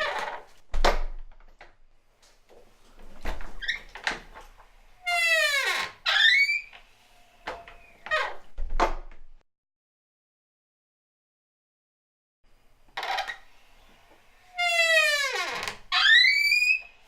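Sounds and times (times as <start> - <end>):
wooden door creaking on hinges: 0.0 - 1.4, 3.0 - 9.2, 13.0 - 13.5, 14.5 - 17.0.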